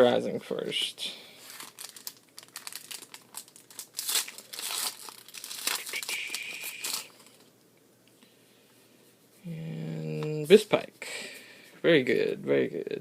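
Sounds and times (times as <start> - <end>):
foil wrapper crinkling and tearing: 1.4 - 7.4.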